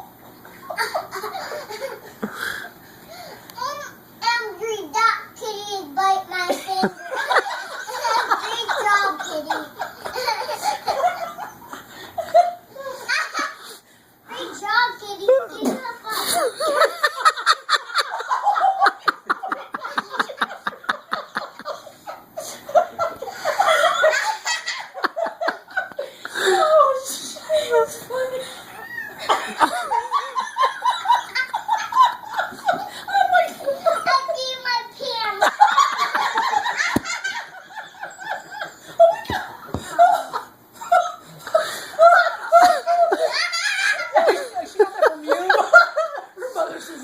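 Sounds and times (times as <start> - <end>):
hearty pulsing laughter: 0.6 - 3.4, 6.5 - 13.7, 16.1 - 34.6, 35.3 - 47.0
wavering high-pitched laughter: 35.4 - 47.0.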